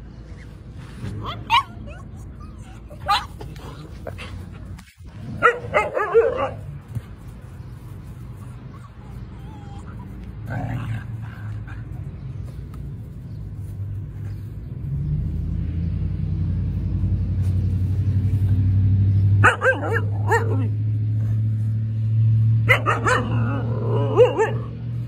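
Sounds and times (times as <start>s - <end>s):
dogs low rumble: 0.8s - 19.2s
dogs yipping and whining: 1.0s - 4.6s, 8.2s - 10.8s, 19.3s - 20.7s, 22.7s - 24.8s.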